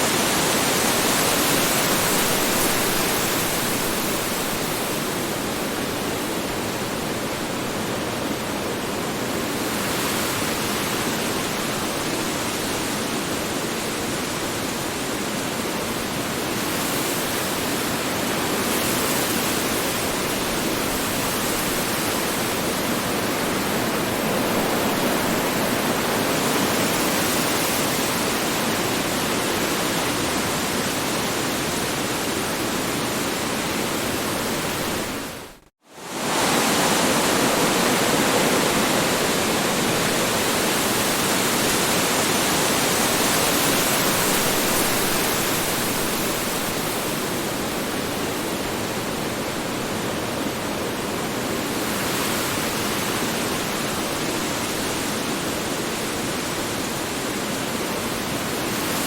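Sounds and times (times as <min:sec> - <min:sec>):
strong wind blowing: 0:18.5 - 0:59.0.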